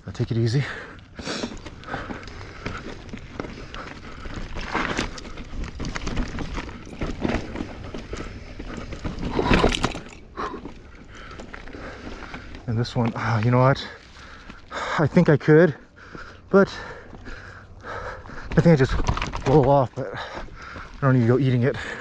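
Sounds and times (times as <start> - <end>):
bike rattling: 0.1 - 22.0
bike tyres crunching on dirt: 0.1 - 22.0.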